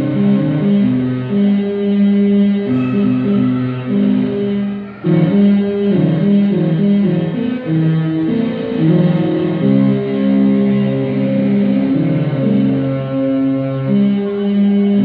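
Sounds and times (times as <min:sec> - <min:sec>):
electronic keyboard melody: 0:00.0 - 0:15.0.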